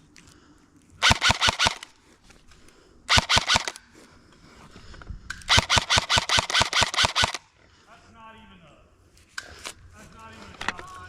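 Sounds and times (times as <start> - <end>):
airsoft gun firing bursts: 1.0 - 1.9, 3.1 - 3.8, 5.5 - 7.5.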